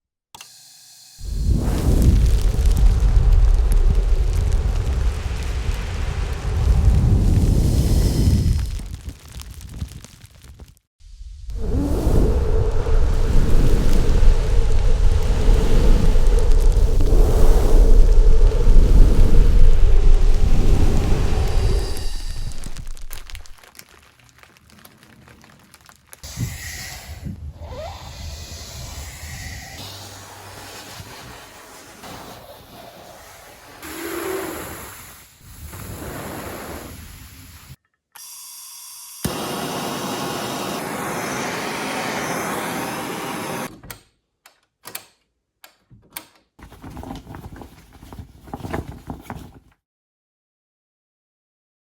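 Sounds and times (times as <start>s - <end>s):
hissing burst: 1.1s - 9.5s, 11.0s - 23.6s, 26.1s - 37.8s, 39.3s - 43.7s
low rumbling whoosh: 1.2s - 9.0s, 11.0s - 23.6s
flamethrower rushing blast: 1.2s - 23.6s, 39.3s - 43.7s
flickering fire crackle: 1.2s - 27.6s, 39.3s - 43.7s
faint crackling: 11.5s - 26.2s.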